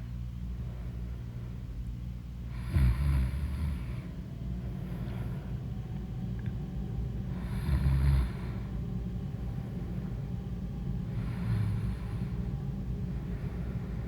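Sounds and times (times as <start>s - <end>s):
woman snoring deeply: 2.5s - 4.0s, 7.4s - 8.6s, 11.2s - 12.3s.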